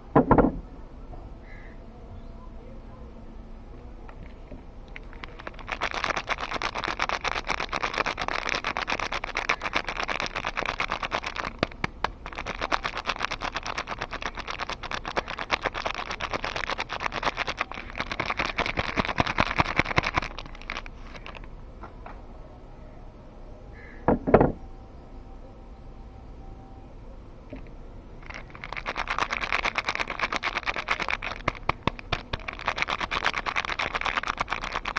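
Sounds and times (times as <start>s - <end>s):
soap packaging crinkling: 4.9s - 21.5s, 28.2s - 34.9s.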